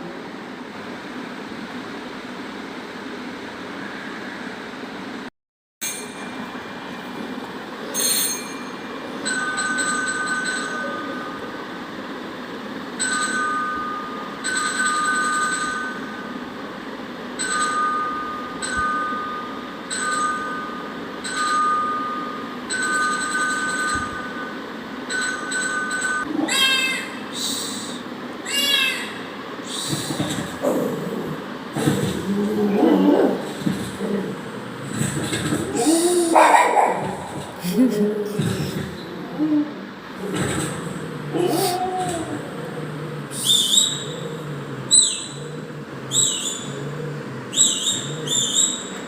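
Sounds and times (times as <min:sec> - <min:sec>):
steady train rumble: 0:00.0 - 0:05.3, 0:06.0 - 0:14.6, 0:23.4 - 0:49.0
rising wavering whine-like calls: 0:41.0 - 0:49.0.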